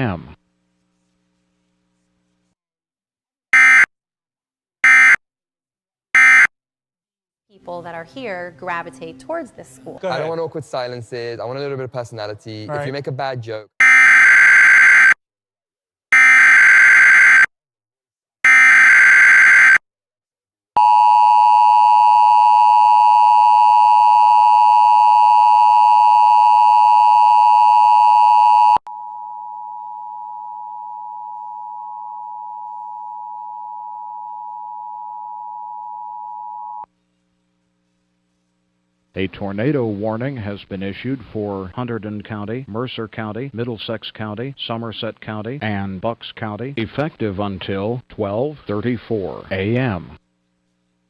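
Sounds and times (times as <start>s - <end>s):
single steady tone: 20.8s - 36.9s.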